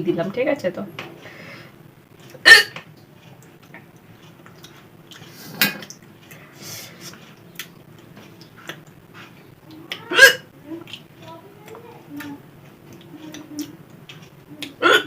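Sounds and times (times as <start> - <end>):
person hiccuping: 2.4 - 2.8, 10.0 - 10.5, 14.8 - 15.0.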